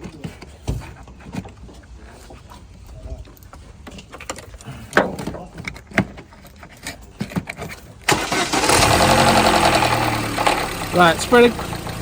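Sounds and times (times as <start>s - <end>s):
car engine starting and idling: 8.0s - 12.0s.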